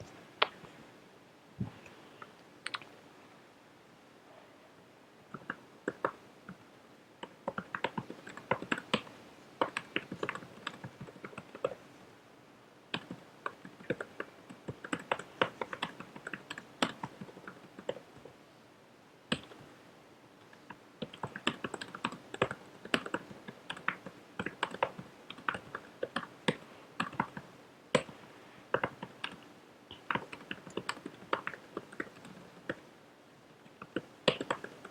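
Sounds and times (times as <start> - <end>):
keyboard typing clicks: 2.6 - 2.9, 5.3 - 6.2, 7.2 - 11.8, 13.0 - 18.0, 19.3 - 19.6, 20.6 - 32.8, 33.7 - 34.9.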